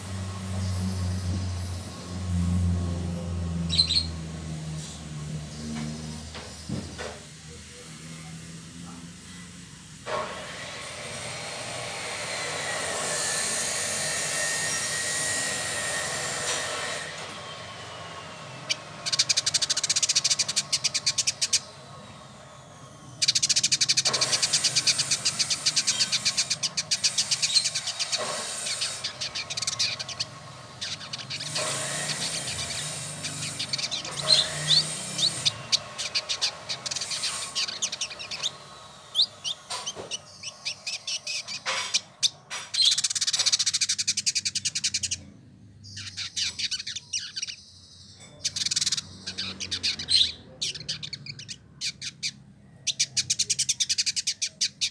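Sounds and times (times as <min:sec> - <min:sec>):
bird singing whistles and chatter: 0:03.6 - 0:04.2, 0:12.8 - 0:54.9.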